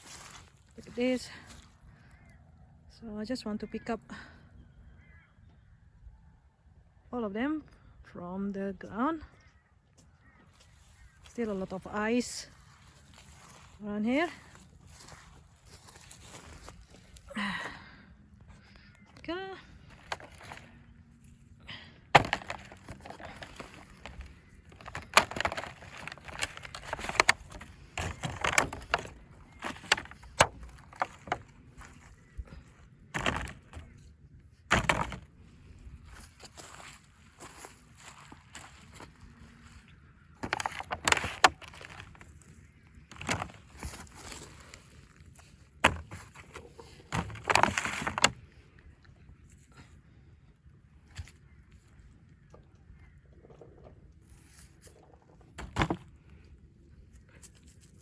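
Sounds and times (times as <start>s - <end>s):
crunching and cracking of ice: 0.0s - 2.3s, 12.4s - 17.4s, 18.6s - 49.8s, 54.3s - 58.0s.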